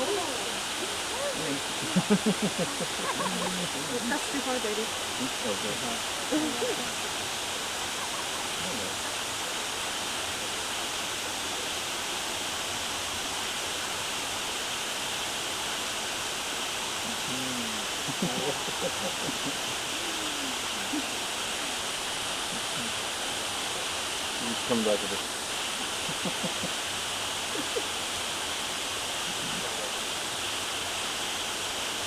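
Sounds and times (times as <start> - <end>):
faint voices: 0.0 - 11.9, 17.0 - 28.2, 29.0 - 30.3
waterfall rushing: 0.0 - 32.0.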